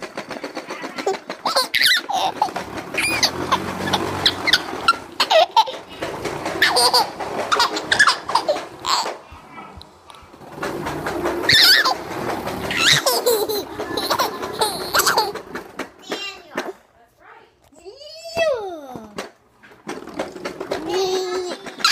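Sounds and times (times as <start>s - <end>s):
child laughing and squealing: 1.0s - 5.8s, 6.6s - 9.1s, 11.5s - 12.0s, 12.7s - 15.4s, 20.8s - 21.9s.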